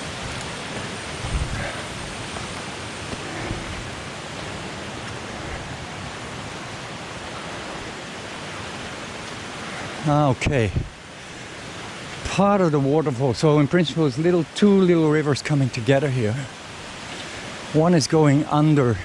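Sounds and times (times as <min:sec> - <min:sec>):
waterfall rushing: 0:00.0 - 0:19.0
soft low thumps: 0:00.2 - 0:01.7.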